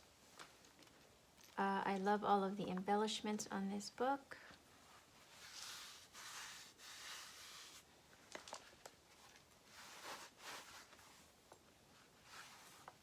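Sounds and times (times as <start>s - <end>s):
paper pages rustling: 5.0s - 11.3s.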